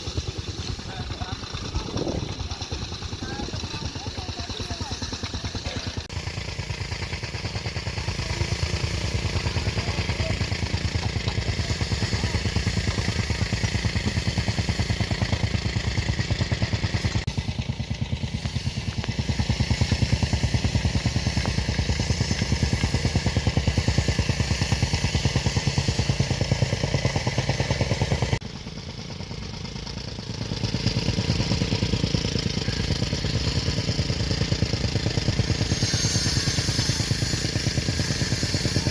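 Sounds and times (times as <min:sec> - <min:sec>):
machinery clatter: 0:00.0 - 0:28.4
heavy machinery engine running: 0:00.0 - 0:38.9.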